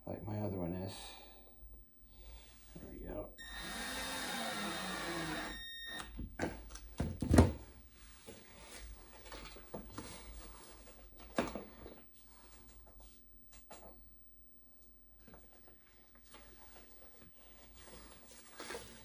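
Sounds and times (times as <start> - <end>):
cordless drill driving screw: 3.4 - 6.1.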